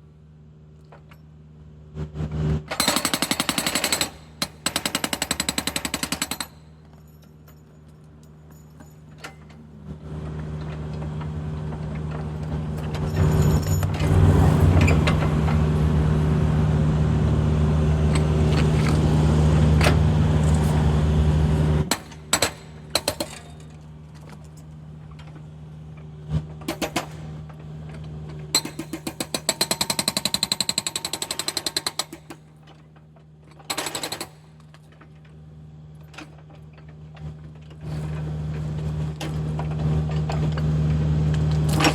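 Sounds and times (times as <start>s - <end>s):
excavator engine revving: 12.5s - 21.9s.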